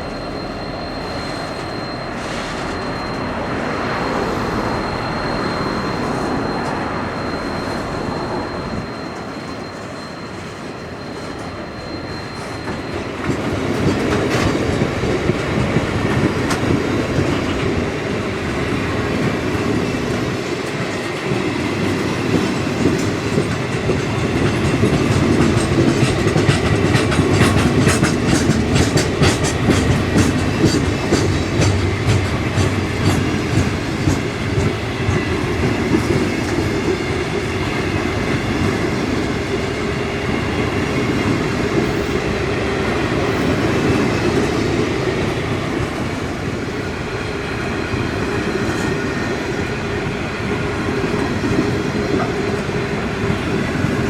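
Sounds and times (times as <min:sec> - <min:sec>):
thin high whine: 0:00.0 - 0:13.0
train rumbling past: 0:00.0 - 0:54.0
wheels clicking over rail joints: 0:19.6 - 0:39.1.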